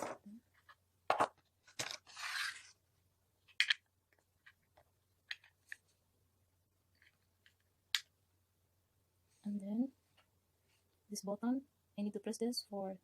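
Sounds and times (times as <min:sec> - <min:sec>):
plastic parts clicking: 0:03.5 - 0:04.6.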